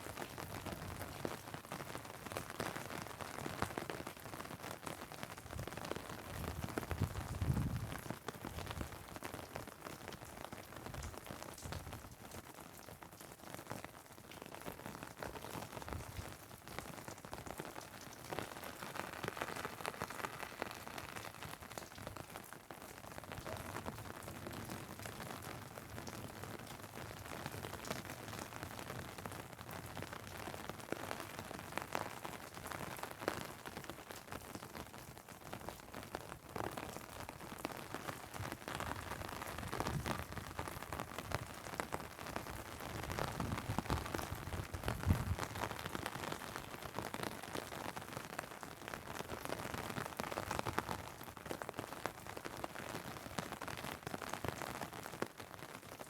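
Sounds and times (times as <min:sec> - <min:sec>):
rain on umbrella and asphalt: 0:00.0 - 0:56.0.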